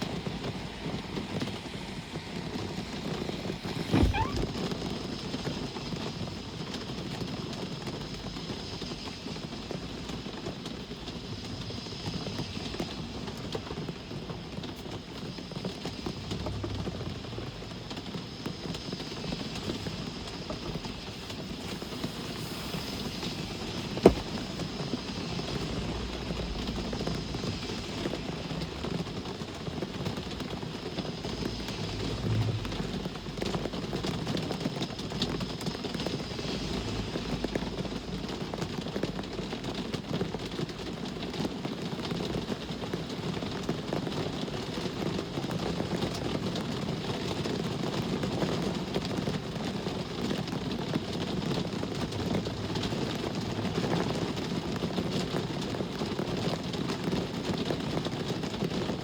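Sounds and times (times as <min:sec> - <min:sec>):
traffic rumble: 0:00.0 - 0:05.8, 0:12.6 - 0:41.2
steady rain: 0:00.0 - 0:59.0.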